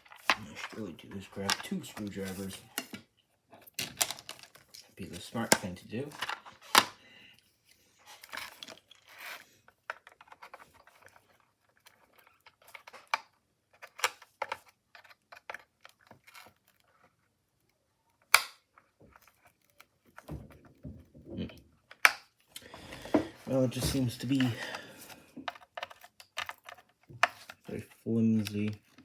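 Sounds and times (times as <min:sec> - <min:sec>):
sharp plastic snaps: 0:18.2 - 0:18.9, 0:21.9 - 0:22.7
screwdrivers scraping plastic case: 0:23.0 - 0:29.0.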